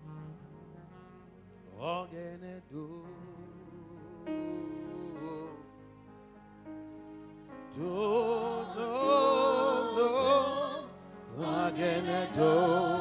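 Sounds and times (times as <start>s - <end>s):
gospel music chords: 0.0s - 13.0s
person singing with vibrato: 7.8s - 13.0s.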